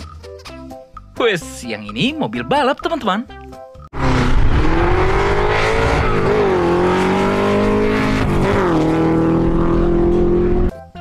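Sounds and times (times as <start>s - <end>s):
high-revving race car engine: 4.0s - 10.7s.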